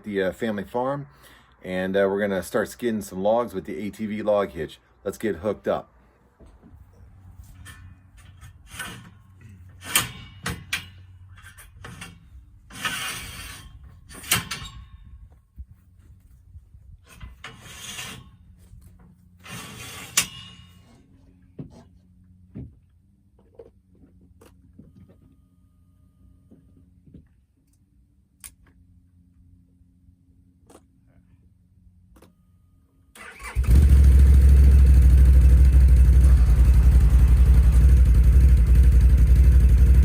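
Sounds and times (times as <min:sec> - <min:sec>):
sharp knocks and clanks: 0:07.5 - 0:14.9
scraping against wood: 0:17.1 - 0:22.1
faint low hum: 0:33.9 - 0:40.0.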